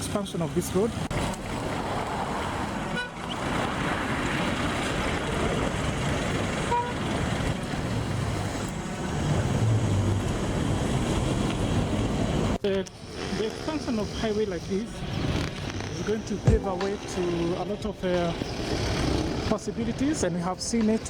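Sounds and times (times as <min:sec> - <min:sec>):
heavy vehicle engine hum: 0:00.0 - 0:21.0
road traffic passing: 0:00.0 - 0:21.0
car horn toot: 0:06.6 - 0:07.1.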